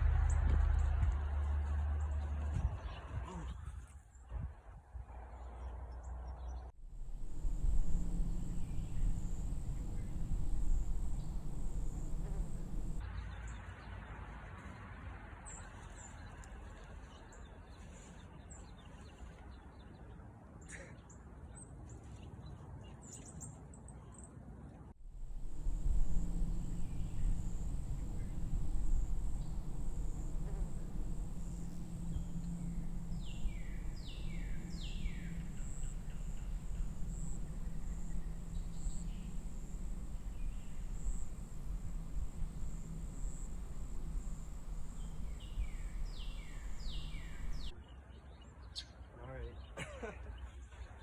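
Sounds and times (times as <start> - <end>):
wind rumble on microphone: 0.0 - 5.5, 6.8 - 13.1, 25.0 - 47.8
faint high whine: 6.8 - 13.1, 25.0 - 47.8
bird chirping: 6.9 - 13.0, 25.1 - 47.8.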